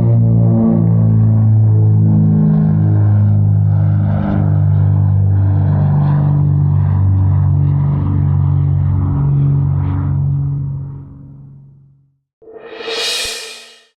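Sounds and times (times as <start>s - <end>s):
aircraft engine drone: 12.4s - 13.9s.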